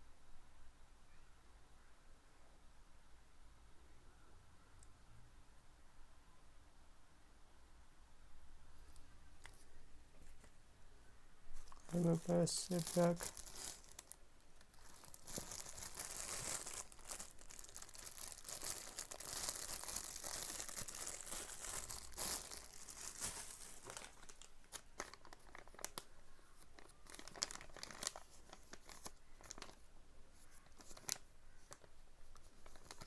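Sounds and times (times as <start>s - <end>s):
plastic packaging crinkling: 11.6s - 33.0s.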